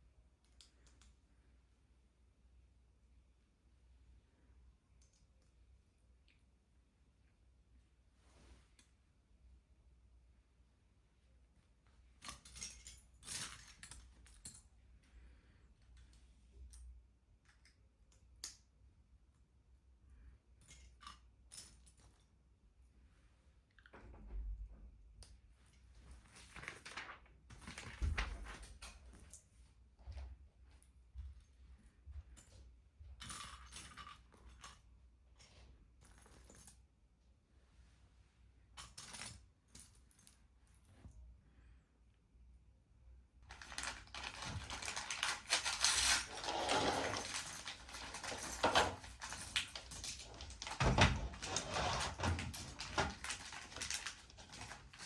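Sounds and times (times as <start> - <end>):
packaging rustling: 43.5 - 55.0.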